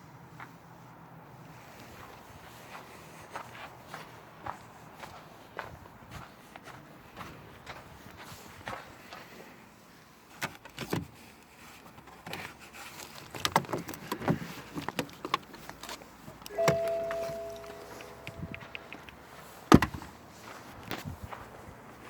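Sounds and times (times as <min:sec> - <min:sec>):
short metallic ring: 0:16.5 - 0:18.7.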